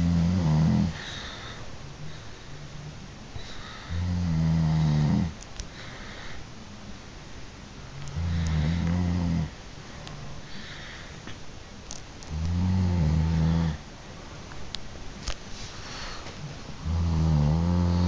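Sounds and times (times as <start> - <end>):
bear snoring: 0.0 - 1.0, 3.9 - 5.4, 8.1 - 9.5, 12.3 - 13.8, 16.8 - 18.0
quiet breath sounds: 0.0 - 6.9, 8.0 - 11.4, 15.5 - 18.0.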